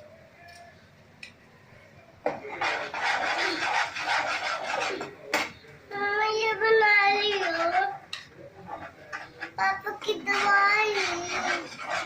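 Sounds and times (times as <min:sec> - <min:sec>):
rough rasping scrape: 0:02.5 - 0:05.1, 0:07.3 - 0:08.0, 0:08.6 - 0:12.0.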